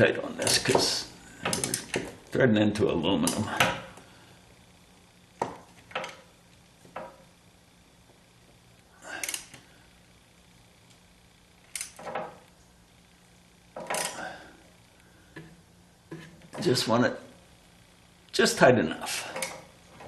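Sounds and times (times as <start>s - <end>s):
ratchet clicking: 9.2s - 9.6s.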